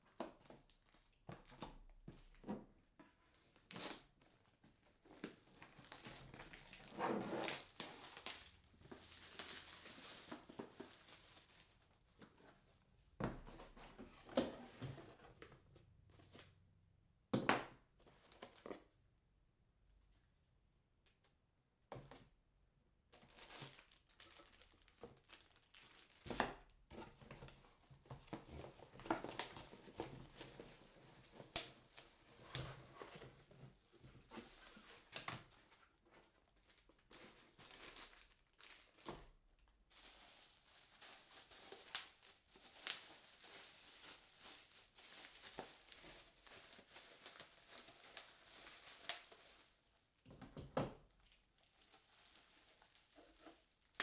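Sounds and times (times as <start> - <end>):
packaging crinkling: 3.6 - 12.0, 23.1 - 26.7, 27.3 - 35.6, 36.5 - 49.9, 51.2 - 54.0.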